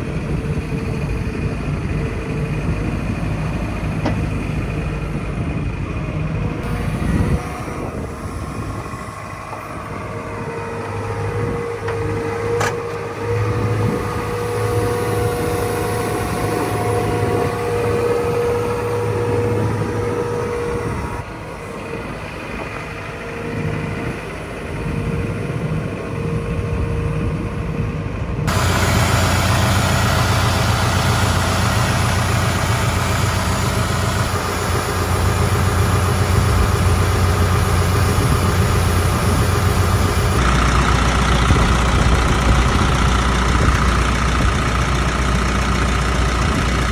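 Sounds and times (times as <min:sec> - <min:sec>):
excavator diesel engine running: 0:00.0 - 0:46.9
thin whine: 0:28.5 - 0:40.4.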